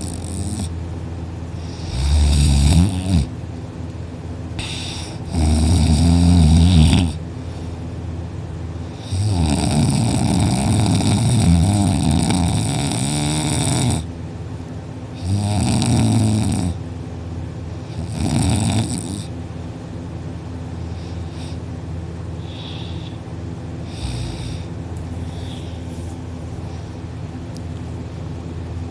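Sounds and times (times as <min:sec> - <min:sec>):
person snoring loudly: 0:00.0 - 0:00.7, 0:01.6 - 0:03.3, 0:04.6 - 0:07.2, 0:09.0 - 0:14.1, 0:15.2 - 0:16.8, 0:17.9 - 0:19.3, 0:23.9 - 0:24.7.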